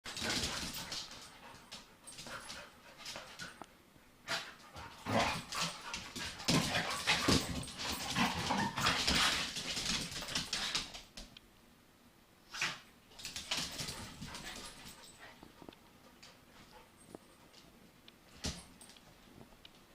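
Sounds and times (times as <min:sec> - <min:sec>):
puppies scuffling: 0:00.1 - 0:03.6, 0:04.3 - 0:11.3, 0:13.2 - 0:17.7.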